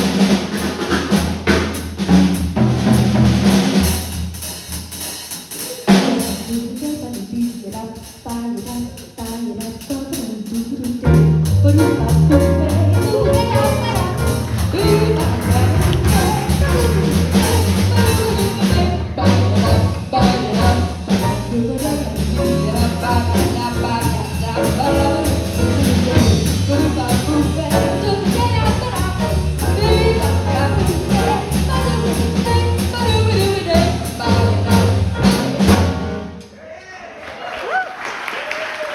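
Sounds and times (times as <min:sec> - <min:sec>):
drums beating steadily: 0:00.0 - 0:36.4
jazz band playing: 0:00.0 - 0:36.4
walking bass line: 0:11.0 - 0:36.2.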